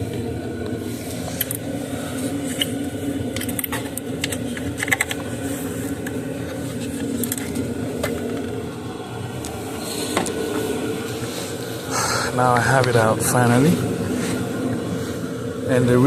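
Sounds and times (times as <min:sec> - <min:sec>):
steady low hum: 0:00.0 - 0:16.0
clicks and taps of engine parts: 0:02.5 - 0:08.5.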